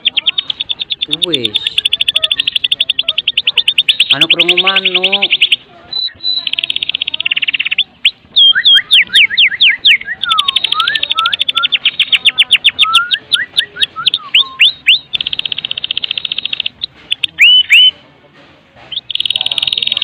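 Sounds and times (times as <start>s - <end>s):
bird singing rattling trills: 0.0s - 18.0s, 18.9s - 20.0s.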